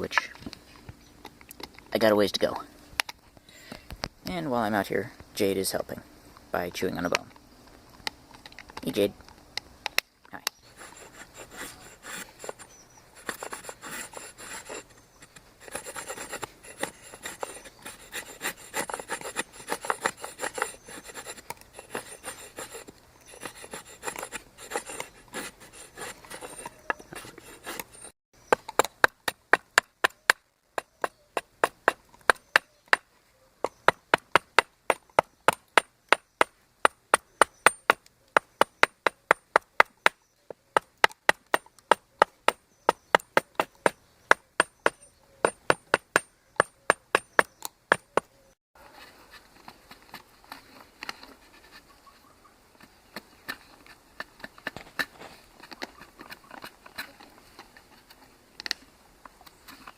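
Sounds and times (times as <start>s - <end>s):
hand tool scraping wood: 10.6s - 29.9s, 40.8s - 52.2s, 52.8s - 58.7s
sharp chopping on wood: 33.6s - 40.2s, 40.8s - 48.3s.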